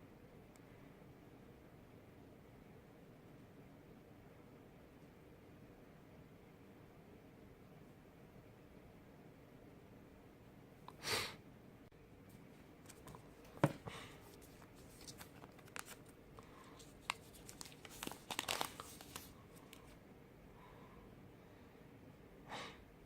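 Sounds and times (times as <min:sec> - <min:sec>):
packaging rustling and crinkling: 0:12.9 - 0:20.0.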